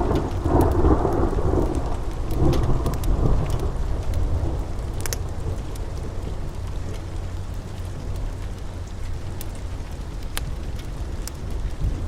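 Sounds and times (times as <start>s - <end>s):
rolling thunder: 0.0s - 6.8s
steady rain: 0.0s - 12.0s.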